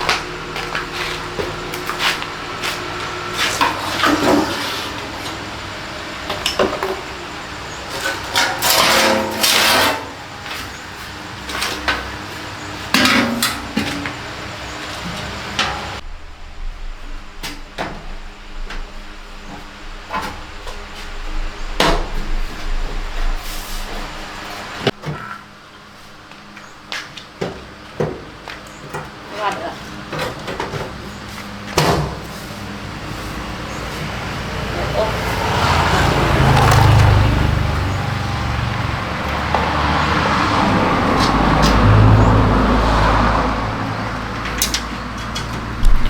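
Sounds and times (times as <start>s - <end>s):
scraping bursts: 0.0s - 24.9s.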